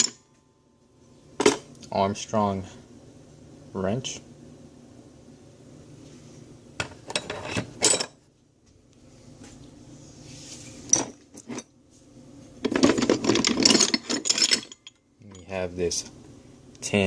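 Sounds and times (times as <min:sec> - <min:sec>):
metal tools clinking: 0:12.7 - 0:15.6.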